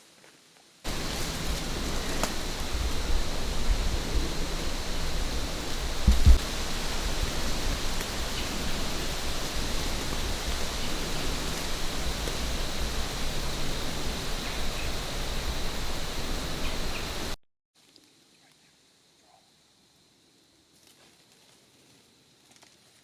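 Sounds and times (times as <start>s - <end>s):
low rumble: 0.9s - 17.4s
rushing outdoor noise: 0.9s - 17.4s.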